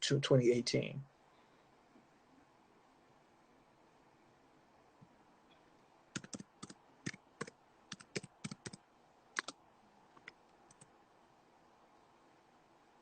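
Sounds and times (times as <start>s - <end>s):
keyboard key clicks: 9.4s - 9.6s.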